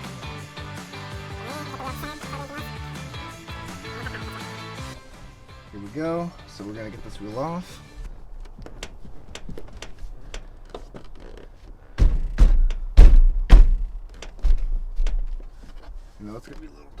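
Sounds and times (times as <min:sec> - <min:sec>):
knocks and thuds on steering wheel: 0:12.0 - 0:15.5.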